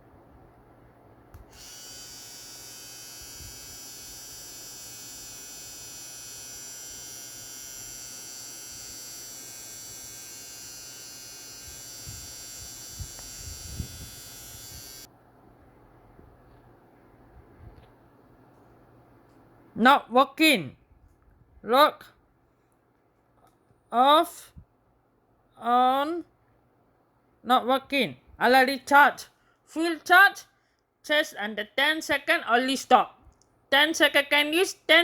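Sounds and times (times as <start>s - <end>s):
electric hair trimmer buzzing: 1.5s - 15.1s.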